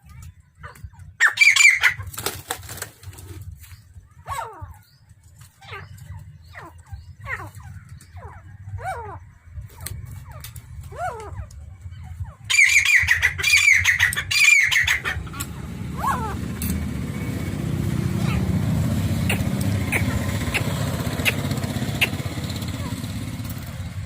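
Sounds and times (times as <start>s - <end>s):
quail calling: 0.6s - 2.1s, 4.2s - 4.9s, 5.6s - 16.6s, 18.2s - 23.9s.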